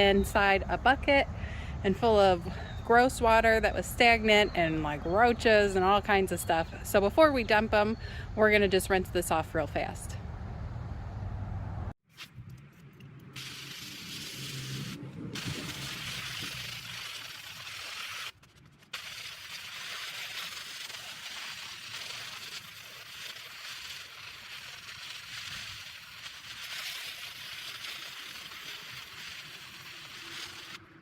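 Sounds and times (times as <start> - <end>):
hose spraying water on tarp: 13.4 - 30.8.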